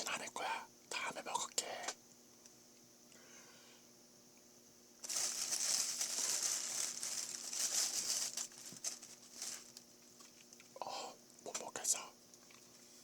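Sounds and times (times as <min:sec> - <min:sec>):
plastic packaging crinkling: 0:05.0 - 0:10.6.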